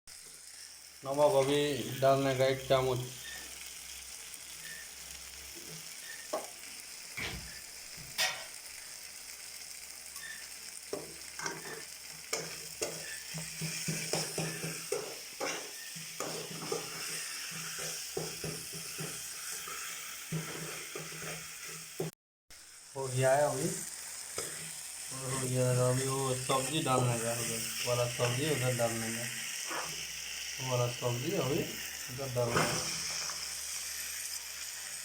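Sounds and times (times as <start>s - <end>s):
food sizzling in a pan: 0.1s - 35.0s
spatula scraping a pan: 10.2s - 22.1s, 24.2s - 25.6s, 29.5s - 30.2s, 32.4s - 34.2s.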